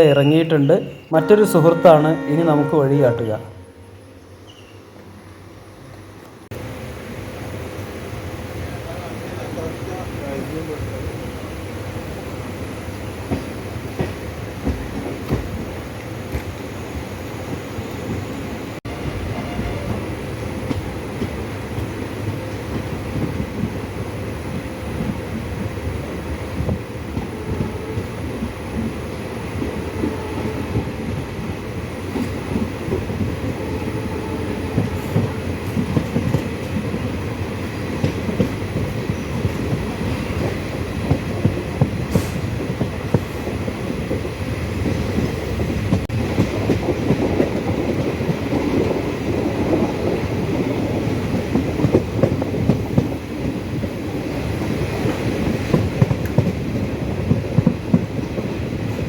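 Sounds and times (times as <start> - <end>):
train rumbling: 0.0 - 59.0
train wheels clattering over rail joints: 34.4 - 59.0.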